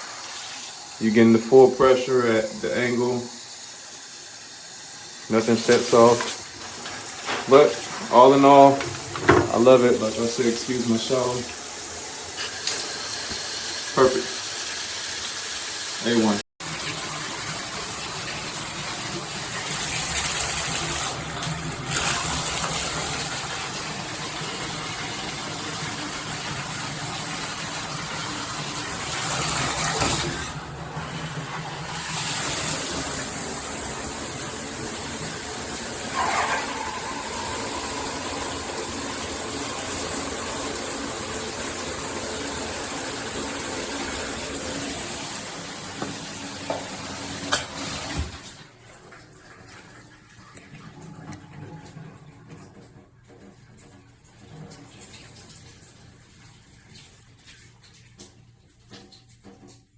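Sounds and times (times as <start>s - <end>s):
shower spraying onto bathtub: 0.0s - 48.6s
short squeak: 36.1s - 38.6s.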